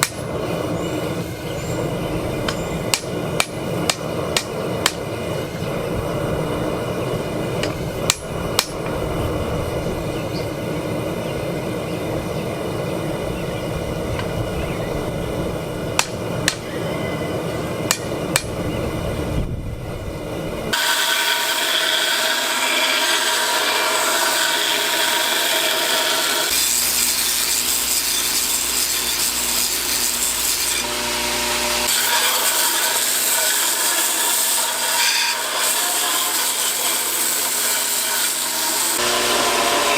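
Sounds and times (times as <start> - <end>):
hammer strikes on steel: 2.5 - 5.0, 7.6 - 8.9, 16.0 - 16.8, 17.9 - 18.6
steady low roar: 5.6 - 20.8
grinder grinding steel: 20.5 - 39.9.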